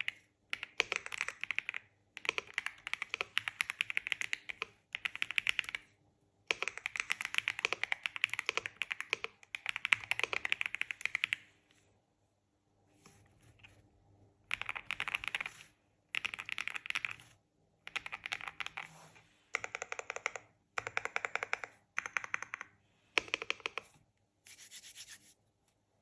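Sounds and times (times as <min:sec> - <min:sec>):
mechanical keyboard clicking: 0:00.0 - 0:05.8, 0:06.5 - 0:11.4, 0:16.1 - 0:17.2, 0:17.9 - 0:18.8, 0:19.6 - 0:23.9.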